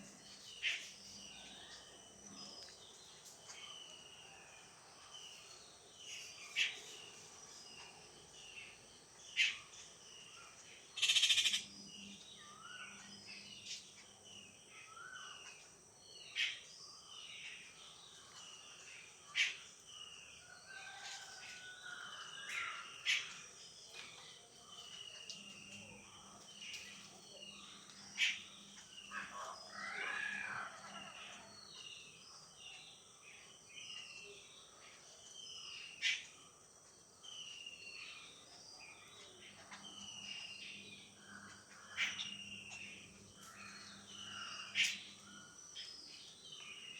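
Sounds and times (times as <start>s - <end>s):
loud sharp bird calls: 11.0s - 11.7s
birds chirping: 37.2s - 46.9s.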